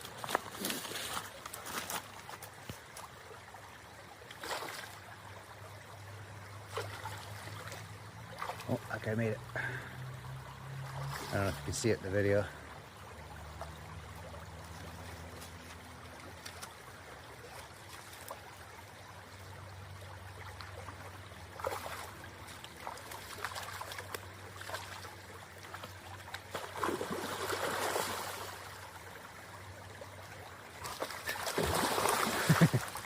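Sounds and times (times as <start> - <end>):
river running over rocks: 0.0 - 33.0
fish splashing: 20.4 - 28.8, 30.8 - 33.0.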